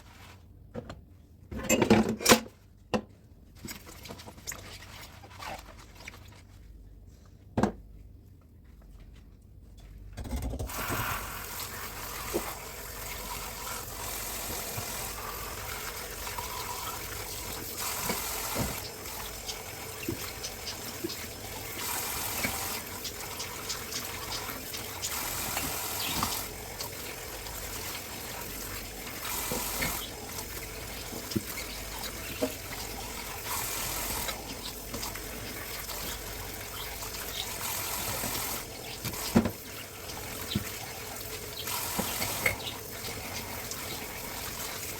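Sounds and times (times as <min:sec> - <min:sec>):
dishes clinking and knocking: 0:01.6 - 0:02.4
tap water running into sink: 0:10.7 - 0:44.9.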